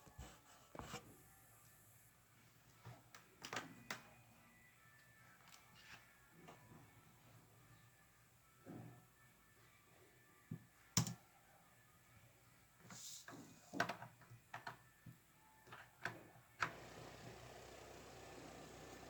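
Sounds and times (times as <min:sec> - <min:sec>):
small fan motor running: 0:16.6 - 0:19.0.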